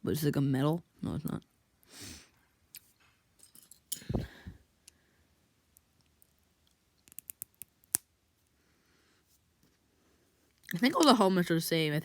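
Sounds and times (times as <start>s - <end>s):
plastic pieces clicking together: 5.8s - 8.0s.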